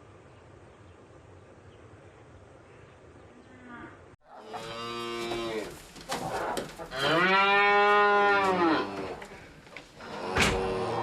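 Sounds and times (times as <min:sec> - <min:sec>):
cow mooing: 0:06.9 - 0:09.2, 0:10.0 - 0:11.0.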